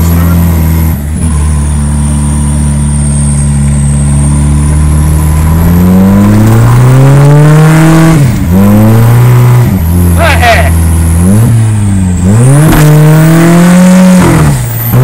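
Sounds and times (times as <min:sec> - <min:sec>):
car engine revving: 0:00.0 - 0:15.0.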